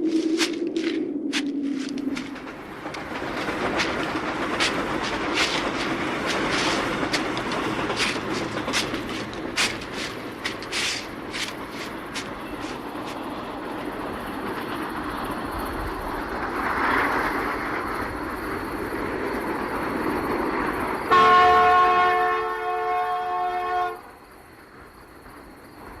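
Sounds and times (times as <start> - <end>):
train rumbling: 0.0 - 26.0
train horn chord: 21.1 - 24.0.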